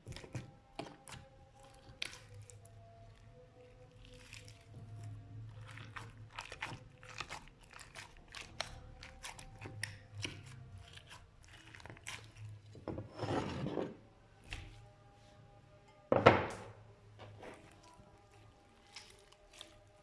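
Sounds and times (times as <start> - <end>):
slime squish: 0.0 - 12.8, 17.2 - 20.0
slime crackling and popping: 5.6 - 12.4, 17.6 - 20.0.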